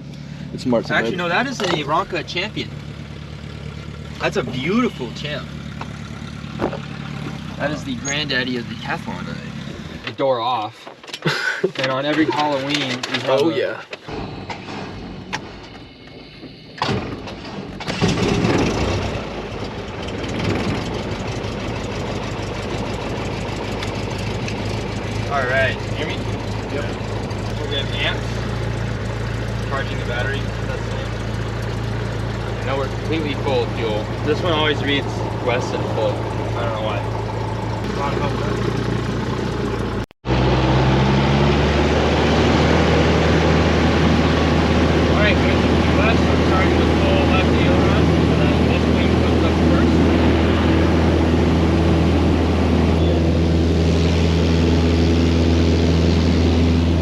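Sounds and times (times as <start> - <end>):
light aircraft engine starting: 12.1 - 40.6, 43.5 - 57.0.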